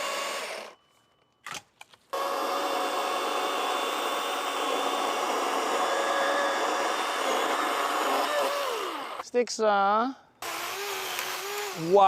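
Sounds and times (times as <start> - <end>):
electric saw motor running: 0.0 - 0.8, 2.1 - 9.2, 10.4 - 12.0.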